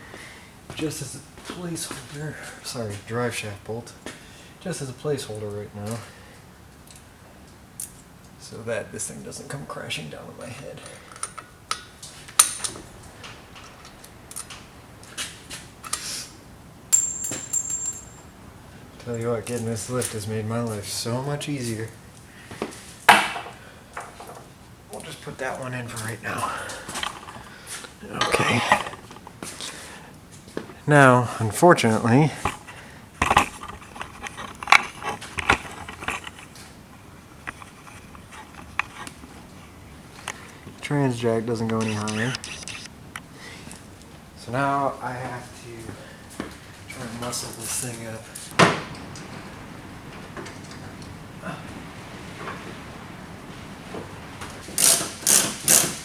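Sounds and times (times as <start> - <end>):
light clicks and taps of tools: 6.8 - 7.1, 10.8 - 15.2.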